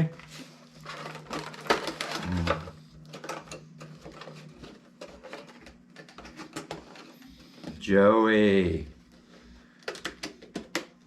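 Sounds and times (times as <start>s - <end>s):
cardboard and plastic packaging crinkling: 0.0s - 7.8s.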